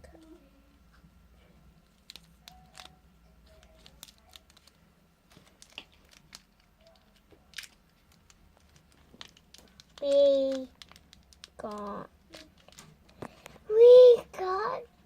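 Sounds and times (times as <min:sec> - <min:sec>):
plastic packaging crinkling and tearing: 0:01.8 - 0:13.6.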